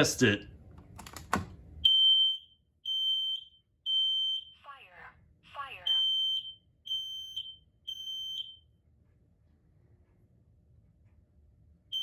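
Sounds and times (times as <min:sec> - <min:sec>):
smoke alarm beeps: 0:01.8 - 0:04.7, 0:05.8 - 0:08.8.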